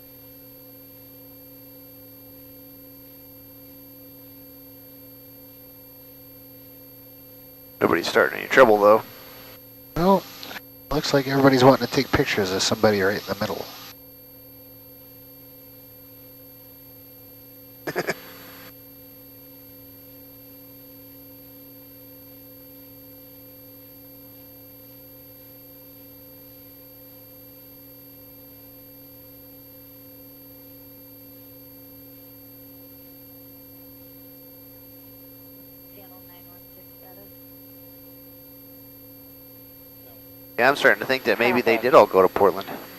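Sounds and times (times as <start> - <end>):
steady electrical hum: 6.6 - 14.0, 17.8 - 18.8, 39.1 - 42.9.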